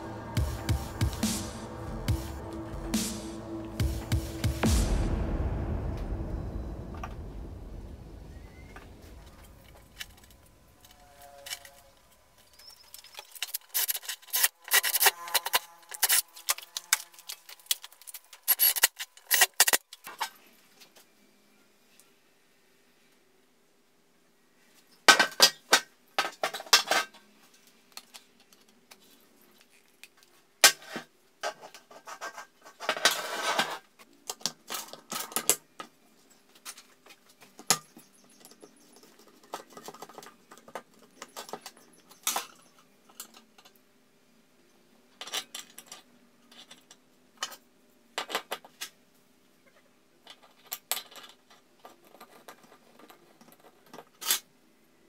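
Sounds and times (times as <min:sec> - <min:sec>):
metal scraping: 0:00.0 - 0:20.5
metal parts clinking: 0:11.0 - 0:20.2.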